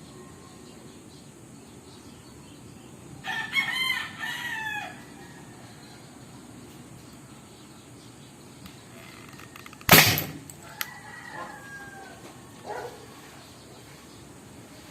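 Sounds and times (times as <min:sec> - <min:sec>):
sharp click: 0:09.5 - 0:11.0
toy gun loud bang: 0:09.9 - 0:10.5.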